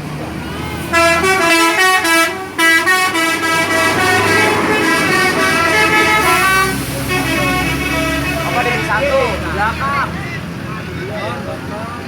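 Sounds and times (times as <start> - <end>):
musical air horn melody: 0.7 - 9.1.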